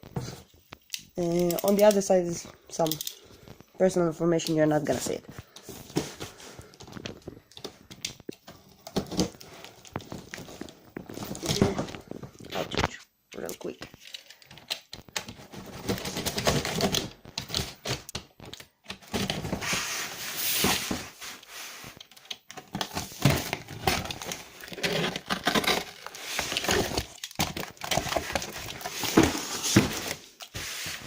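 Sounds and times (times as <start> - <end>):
paper or plastic crinkling: 13.8 - 31.0
cardboard box clicking and rattling: 15.0 - 19.7, 22.5 - 30.3.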